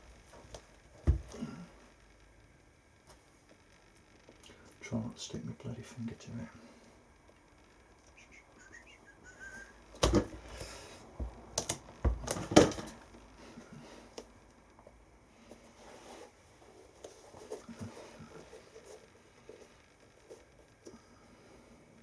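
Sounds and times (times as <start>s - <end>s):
soft rustling: 12.9s - 22.0s.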